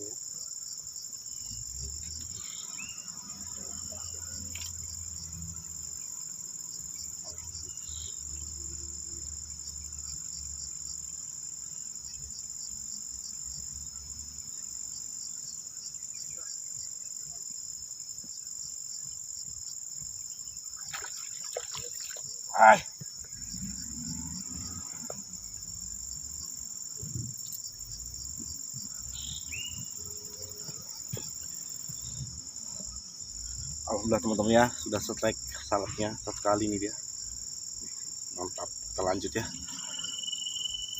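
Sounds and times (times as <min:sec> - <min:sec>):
insects shrilling chorus: 0:01.1 - 0:10.4, 0:20.4 - 0:40.9.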